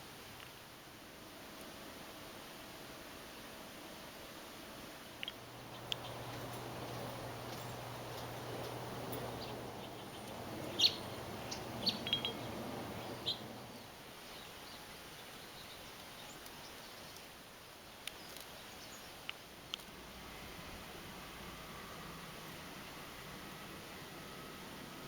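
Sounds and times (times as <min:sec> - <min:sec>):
outdoor background noise: 0:00.0 - 0:25.0
birds chirping: 0:05.2 - 0:17.4, 0:18.0 - 0:19.8.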